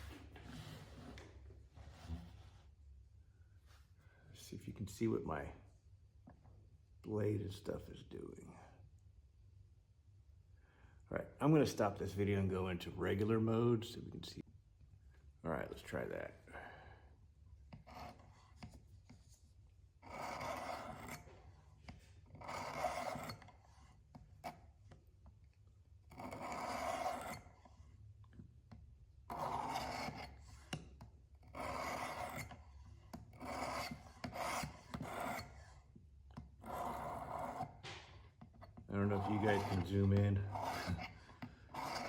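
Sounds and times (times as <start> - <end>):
sharpening stone scraping steel: 17.8 - 18.7, 20.0 - 21.3, 22.3 - 24.6, 26.1 - 27.7, 29.3 - 30.9, 31.5 - 32.7, 33.3 - 35.8, 36.6 - 37.8, 39.0 - 42.0.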